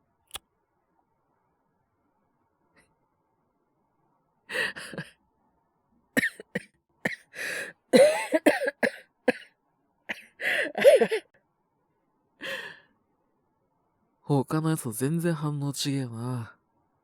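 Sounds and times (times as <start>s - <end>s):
man coughing: 4.6s - 5.1s, 6.2s - 7.3s, 8.0s - 9.5s, 10.1s - 11.2s.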